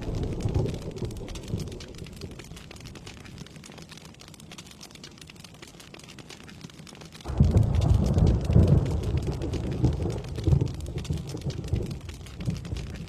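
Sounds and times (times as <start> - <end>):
thunder rumbling: 0.0 - 3.1, 7.3 - 13.0
steady rain: 0.0 - 13.0.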